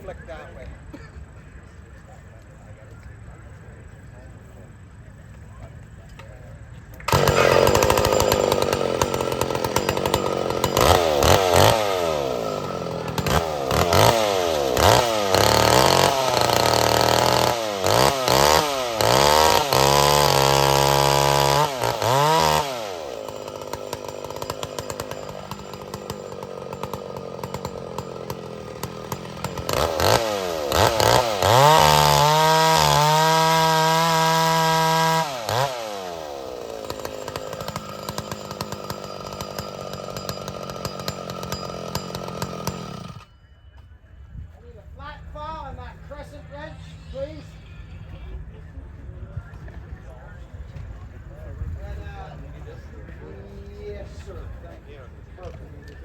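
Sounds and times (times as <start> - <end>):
chainsaw revving and idling: 6.7 - 43.3.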